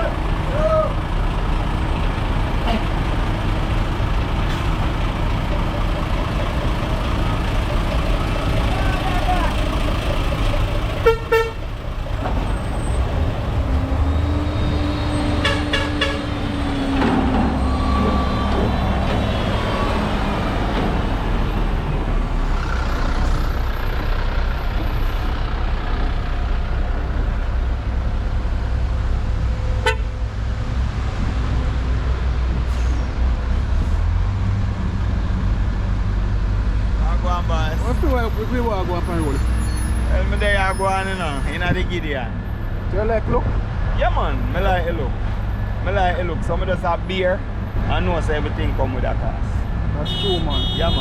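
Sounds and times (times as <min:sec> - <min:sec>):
heavy vehicle engines rumbling: 0:00.0 - 0:51.0
short horn toots: 0:50.0 - 0:51.0.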